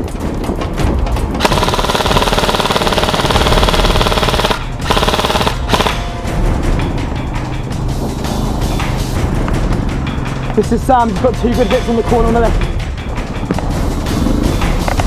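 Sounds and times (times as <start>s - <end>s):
electric rifle firing bursts: 1.4s - 6.1s.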